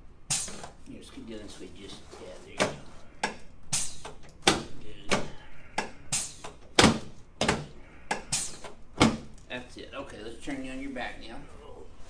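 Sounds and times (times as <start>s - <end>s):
treatment table knocks: 6.7s - 7.8s, 9.0s - 9.4s.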